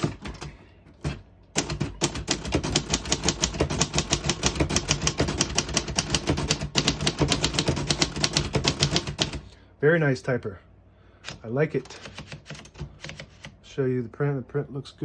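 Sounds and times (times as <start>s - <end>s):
typewriter keys clicking: 0.0s - 9.5s, 11.2s - 13.6s.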